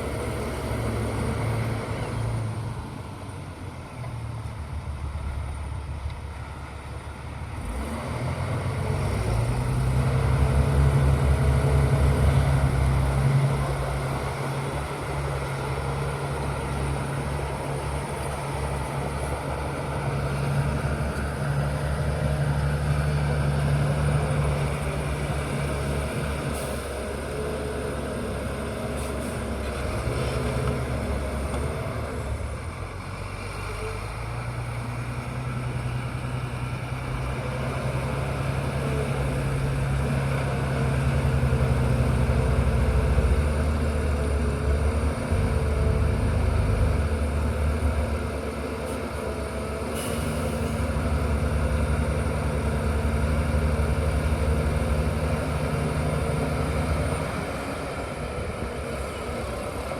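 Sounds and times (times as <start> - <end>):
bulldozer diesel engine running: 0.0 - 59.9.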